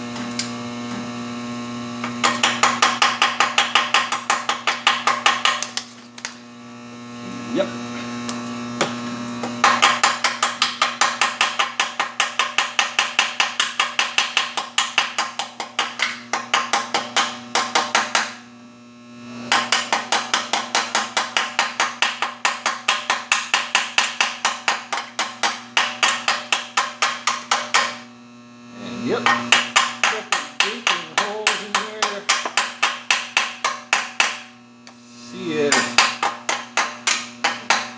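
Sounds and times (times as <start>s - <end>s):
rapid metal strikes: 19.5s - 28.0s, 29.2s - 34.6s.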